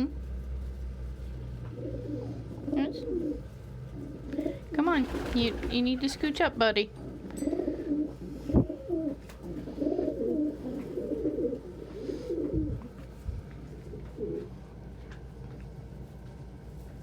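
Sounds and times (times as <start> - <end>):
pigeons cooing: 1.6 - 13.0, 13.7 - 14.6.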